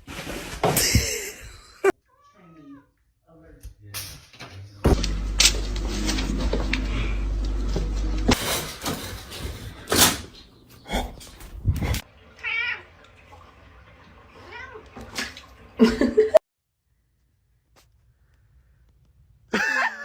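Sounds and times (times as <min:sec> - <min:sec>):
cat meowing: 0:02.0 - 0:03.0.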